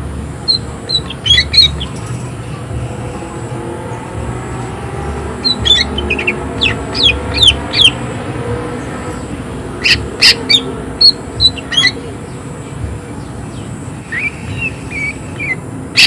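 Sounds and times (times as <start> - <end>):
bird singing sharp calls: 0.4 - 2.6, 3.8 - 8.0, 9.8 - 12.5, 13.2 - 16.0.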